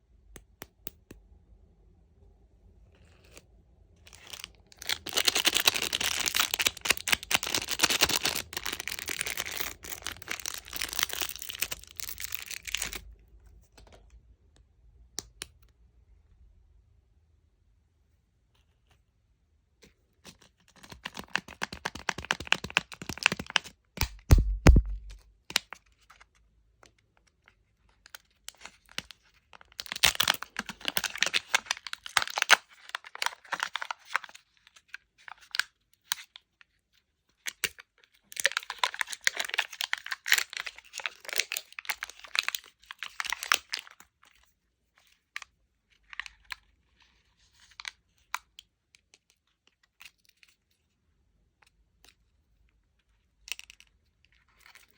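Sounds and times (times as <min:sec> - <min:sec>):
plastic wrappers crinkling: 0:04.1 - 0:13.0, 0:20.8 - 0:23.7, 0:29.5 - 0:34.4, 0:38.3 - 0:44.0.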